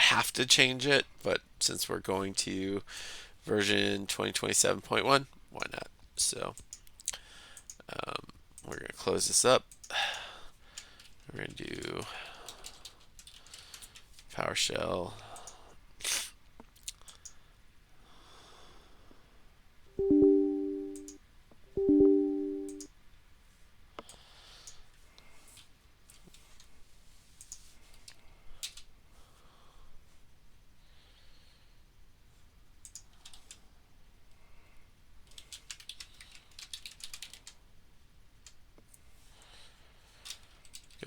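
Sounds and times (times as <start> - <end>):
computer keyboard typing: 12.5 - 14.2, 20.0 - 21.2, 21.8 - 22.9, 35.3 - 37.6
computer alert chime: 20.0 - 21.2, 21.8 - 22.9.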